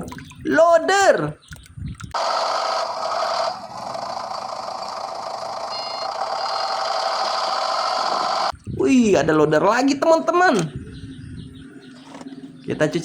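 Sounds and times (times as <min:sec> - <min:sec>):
short high beep: 0:05.7 - 0:06.7.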